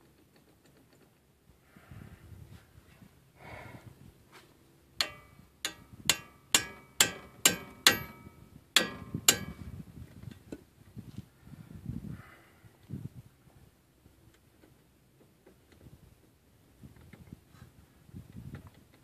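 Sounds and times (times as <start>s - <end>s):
hammer striking metal: 5.0s - 9.7s.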